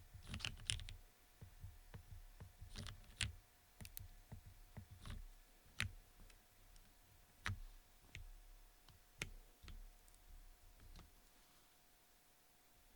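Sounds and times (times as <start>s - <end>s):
mechanical keyboard keystrokes: 0.2s - 6.0s.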